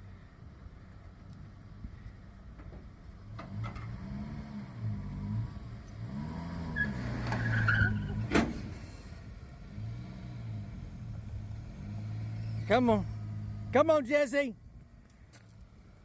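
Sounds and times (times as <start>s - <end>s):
high squeal: 6.8s - 8.2s.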